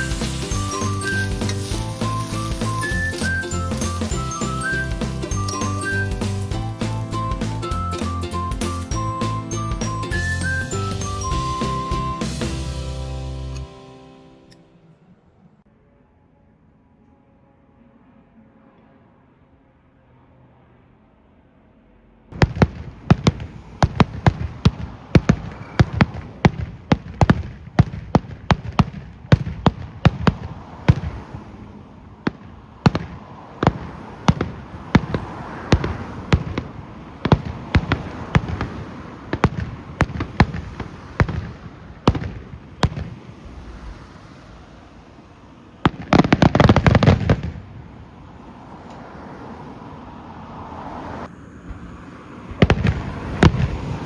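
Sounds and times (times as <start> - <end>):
fireworks cracking: 0.0 - 13.6.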